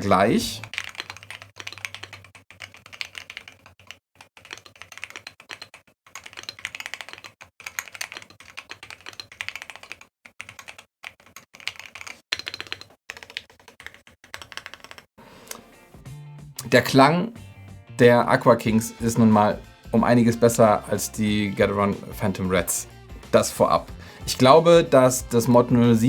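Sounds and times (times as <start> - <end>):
mechanical keyboard keys clacking: 0.2 - 15.1.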